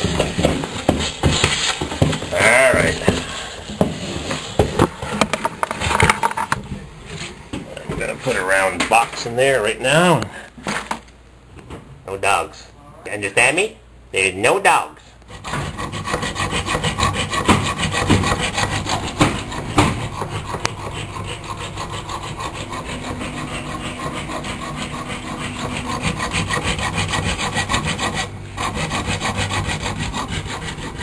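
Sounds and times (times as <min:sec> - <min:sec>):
saw cutting rapid strokes: 0:15.4 - 0:31.0.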